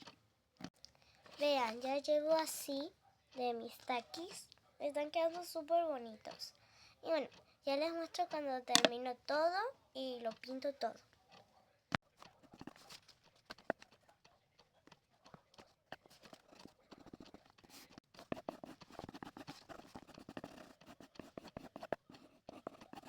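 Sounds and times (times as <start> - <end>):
pencil scratching on paper: 12.3 - 14.0, 15.6 - 23.0.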